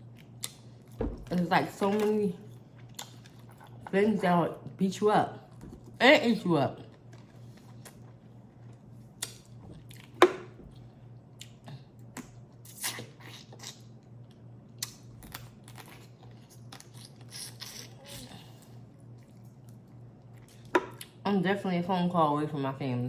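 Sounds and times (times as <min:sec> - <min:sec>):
wet squelching and chewing: 0:02.4 - 0:03.9, 0:06.8 - 0:21.2.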